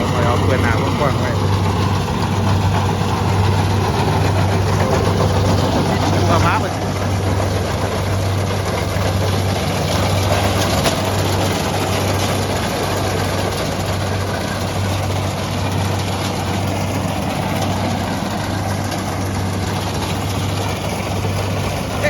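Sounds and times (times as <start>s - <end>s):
combine harvester diesel engine: 0.0s - 22.0s.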